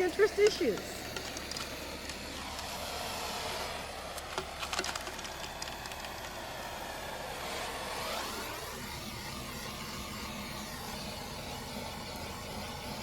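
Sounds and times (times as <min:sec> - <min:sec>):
crackles: 0:00.0 - 0:02.8, 0:03.9 - 0:07.4
gas torch flame hissing: 0:00.0 - 0:13.0.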